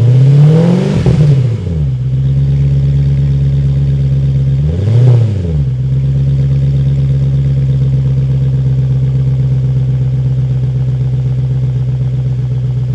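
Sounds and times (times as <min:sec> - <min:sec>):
engine revving: 0:00.0 - 0:06.7
car engine idling: 0:00.0 - 0:12.9.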